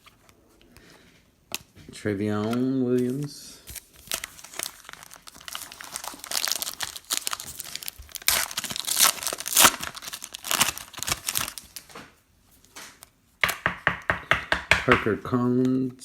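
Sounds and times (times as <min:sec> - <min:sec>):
wrapper tearing and crinkling: 0:03.0 - 0:12.0.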